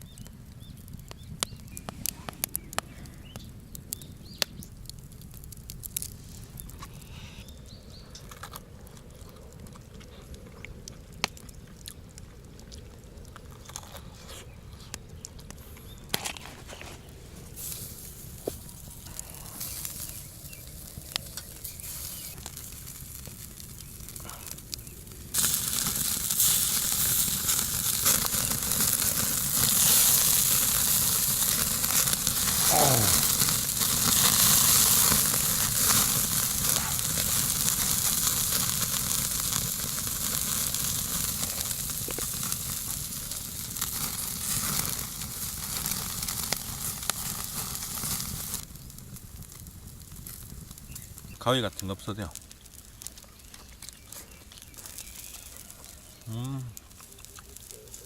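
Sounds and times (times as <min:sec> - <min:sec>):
meat sizzling on a grill: 0:17.5 - 0:58.0.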